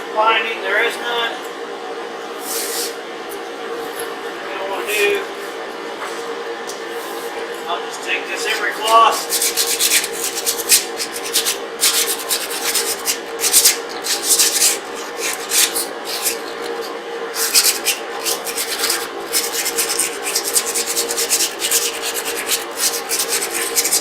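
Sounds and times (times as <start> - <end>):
emery cloth rasping on metal: 8.5 - 16.6, 17.4 - 24.0.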